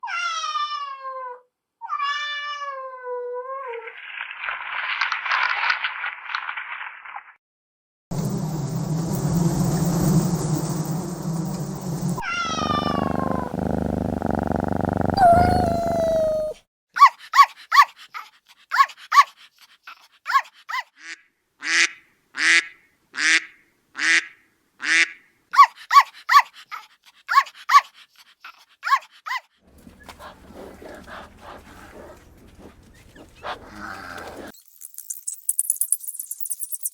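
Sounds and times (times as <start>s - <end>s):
kitten meowing: 12.2s - 16.6s
puppy yipping and barking: 15.2s - 16.6s, 28.9s - 34.4s.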